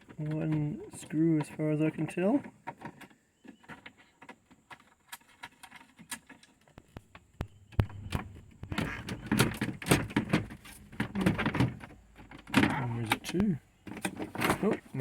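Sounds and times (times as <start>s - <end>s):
thunk: 6.8s - 11.8s
glovebox rattling and knocking: 6.8s - 15.0s.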